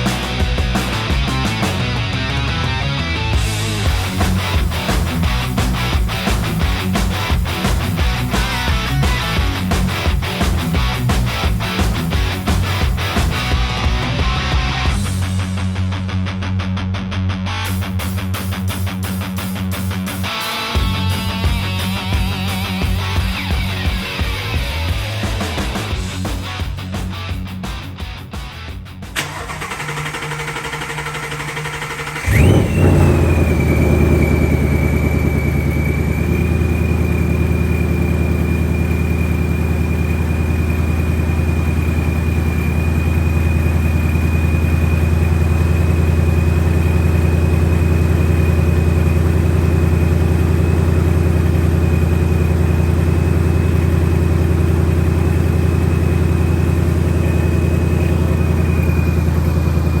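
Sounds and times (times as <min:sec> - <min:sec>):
car engine starting and idling: 0:00.0 - 0:16.0, 0:29.0 - 1:00.0
high supercharger whine: 0:29.2 - 1:00.0.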